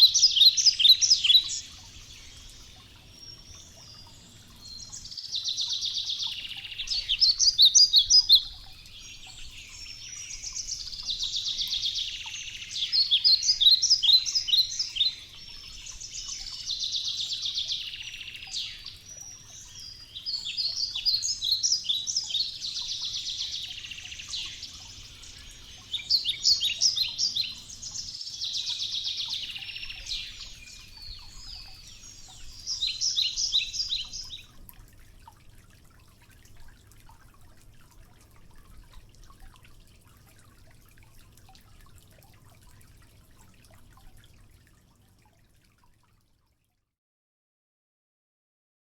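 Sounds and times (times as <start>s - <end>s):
songbird trilling song: 0.0s - 34.6s.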